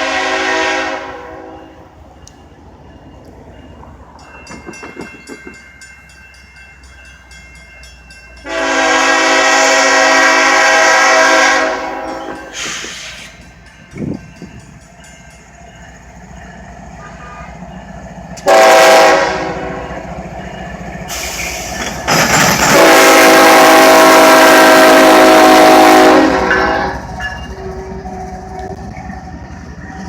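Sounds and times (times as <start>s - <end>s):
locomotive horn blasts: 0.0s - 1.8s, 8.4s - 12.6s, 17.0s - 17.7s, 18.4s - 20.1s, 22.6s - 27.2s
locomotive engine rumble: 1.4s - 30.0s.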